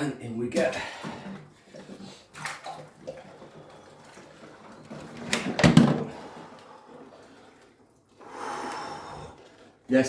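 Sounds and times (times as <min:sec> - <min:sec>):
clunks and shuffling: 0:00.5 - 0:08.2.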